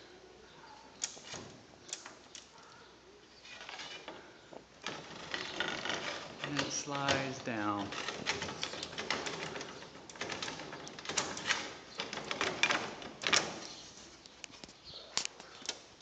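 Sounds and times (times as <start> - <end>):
window panel clicking and rattling: 3.6 - 13.8.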